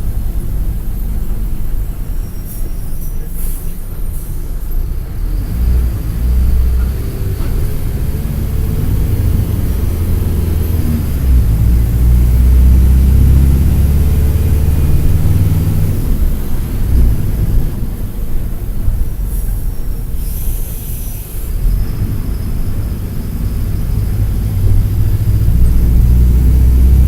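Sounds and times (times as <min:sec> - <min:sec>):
bus diesel engine drone: 0:00.0 - 0:27.0.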